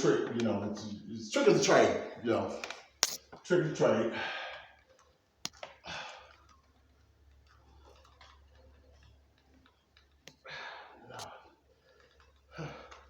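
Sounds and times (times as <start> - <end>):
sharp handling clicks: 2.6 - 3.4.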